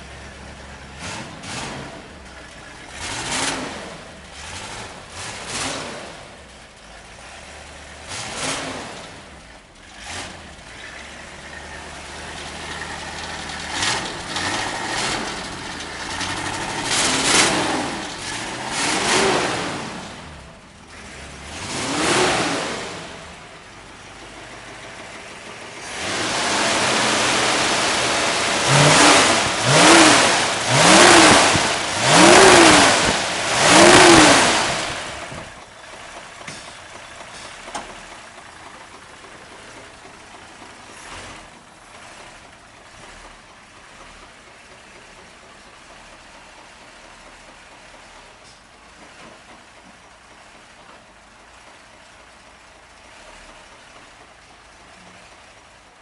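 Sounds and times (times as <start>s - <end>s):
car engine revving: 0.0s - 44.4s.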